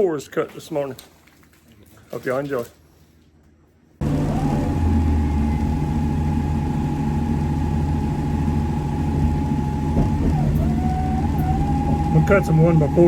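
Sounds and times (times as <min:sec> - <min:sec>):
high saw whine: 0:04.0 - 0:13.0
sawmill engine drone: 0:04.0 - 0:13.0.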